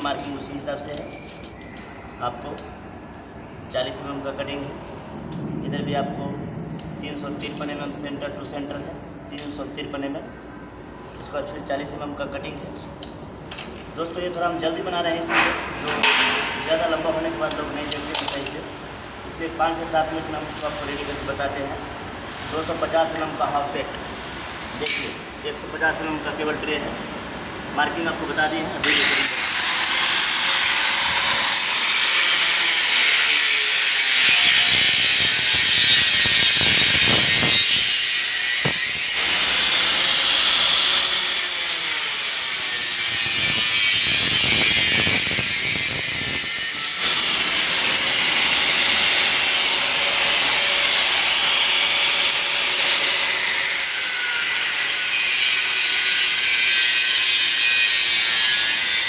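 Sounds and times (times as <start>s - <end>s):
power tool cutting metal: 13.8s - 59.0s.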